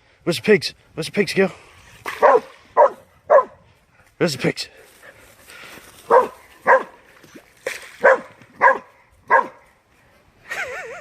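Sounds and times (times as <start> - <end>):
dog barking excitedly: 2.2 - 3.6, 6.1 - 7.0, 8.0 - 9.6.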